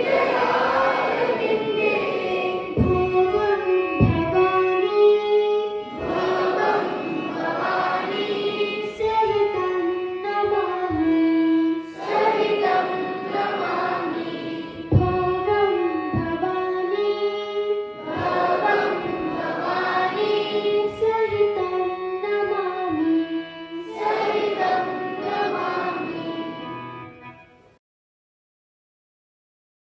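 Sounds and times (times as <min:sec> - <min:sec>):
group of voices singing: 0:00.0 - 0:03.1, 0:05.8 - 0:09.5, 0:11.8 - 0:15.1, 0:17.9 - 0:21.0, 0:23.8 - 0:26.8
instrumental accompaniment: 0:00.0 - 0:27.8.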